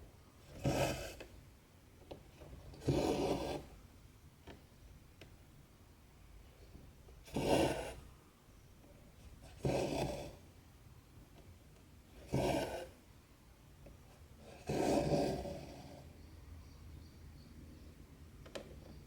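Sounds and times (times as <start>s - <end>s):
thread rasping through canvas: 0.5s - 1.3s.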